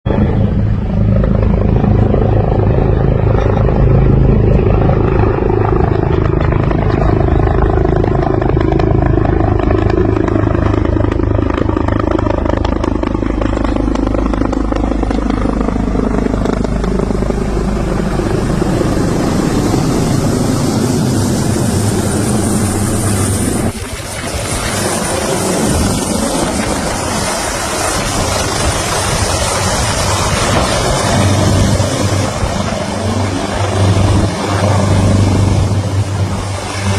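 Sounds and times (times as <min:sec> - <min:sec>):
helicopter running: 0:00.0 - 0:36.9
loud even rushing noise: 0:18.9 - 0:36.9.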